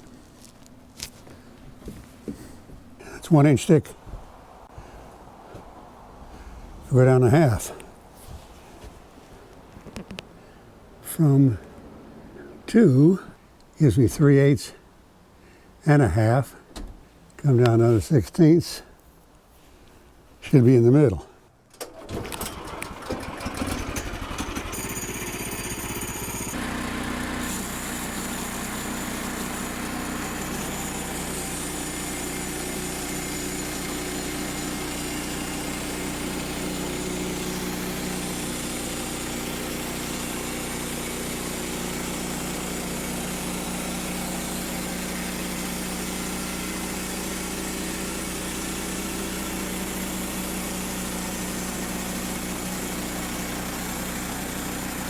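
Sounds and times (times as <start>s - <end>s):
sawmill engine cutting board: 22.2s - 55.0s.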